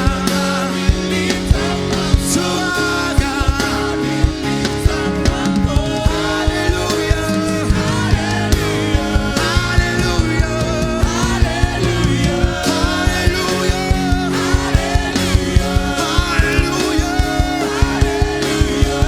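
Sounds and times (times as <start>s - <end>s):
band playing held chords: 0.0s - 19.0s
steady drum beat: 0.0s - 19.0s
person singing: 9.0s - 19.0s.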